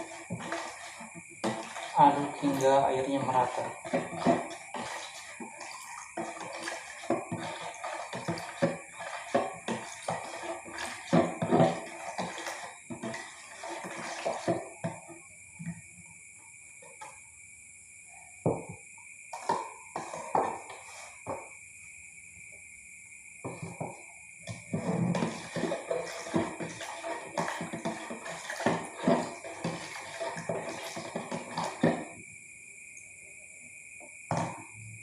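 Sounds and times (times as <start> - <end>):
liquid swishing: 0.0 - 15.2, 19.4 - 21.4, 24.5 - 32.2.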